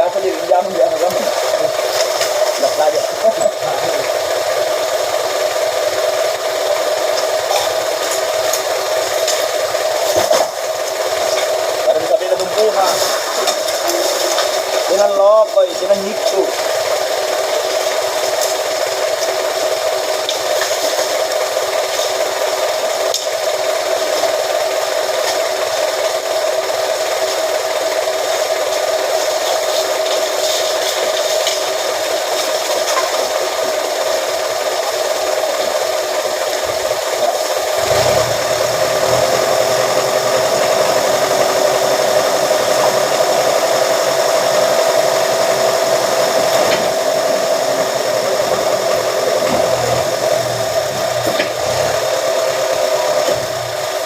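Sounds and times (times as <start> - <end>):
press machine motor whining: 36.2 - 54.0
deep hum: 37.7 - 53.9.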